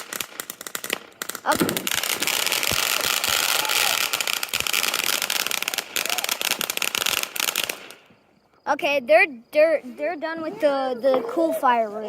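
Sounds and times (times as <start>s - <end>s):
loud firework bangs: 0.0s - 8.2s
fireworks crackling: 0.0s - 12.0s.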